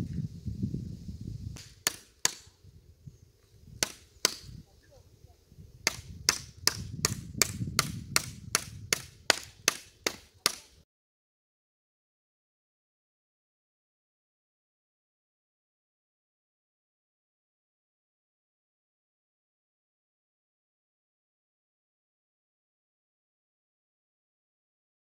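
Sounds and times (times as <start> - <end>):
hand tool striking: 1.6 - 2.5, 3.8 - 4.6, 5.8 - 10.7.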